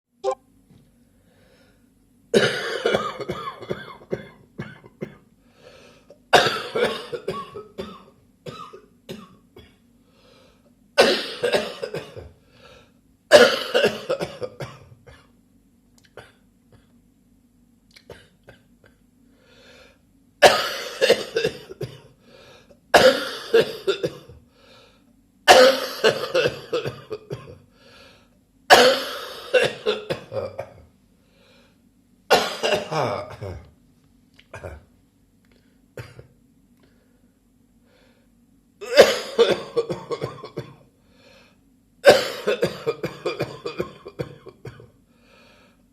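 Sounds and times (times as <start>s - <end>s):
man coughing: 2.4s - 5.2s, 6.3s - 9.8s, 11.0s - 12.4s, 13.3s - 15.3s, 20.4s - 22.1s, 23.0s - 24.4s, 25.5s - 27.6s, 28.7s - 30.8s, 32.3s - 33.7s, 34.5s - 34.9s, 36.0s - 36.3s, 38.8s - 40.8s, 42.0s - 45.0s.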